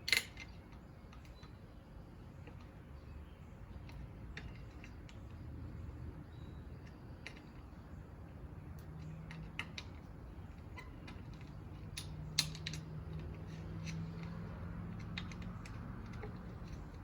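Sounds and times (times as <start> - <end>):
hand tools clicking and tapping: 8.7 - 17.0.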